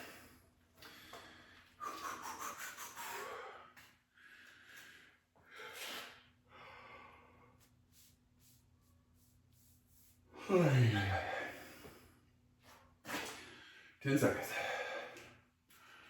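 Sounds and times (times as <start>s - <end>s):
man breathing hard: 0.0s - 7.7s, 10.4s - 12.1s, 13.1s - 16.0s.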